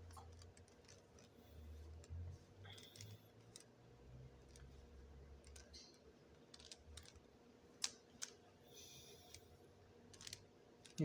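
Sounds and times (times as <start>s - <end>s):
puzzle cube clicking: 0.2s - 1.4s, 5.4s - 7.2s, 10.1s - 11.0s.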